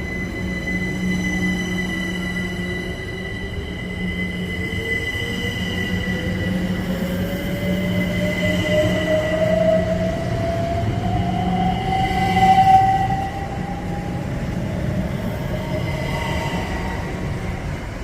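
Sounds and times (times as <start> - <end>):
steady high-pitched tones: 0.0 - 18.0
train whine rising in pitch: 0.0 - 18.0.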